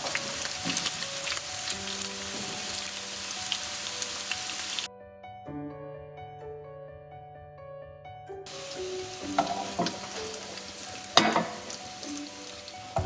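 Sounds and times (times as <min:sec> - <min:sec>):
chicken sizzling in oil: 0:00.0 - 0:04.9, 0:08.5 - 0:13.0
soft background music: 0:00.0 - 0:13.0.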